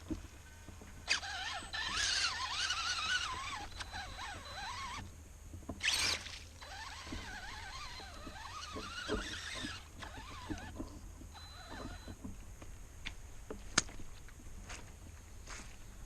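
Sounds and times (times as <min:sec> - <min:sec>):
electric motor whining: 0:01.0 - 0:05.1, 0:05.8 - 0:12.2.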